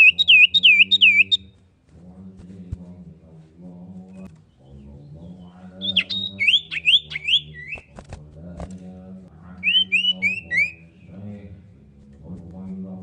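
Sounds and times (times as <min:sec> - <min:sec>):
bird whistling rising notes: 0:00.0 - 0:01.4, 0:05.8 - 0:07.9, 0:09.6 - 0:11.0.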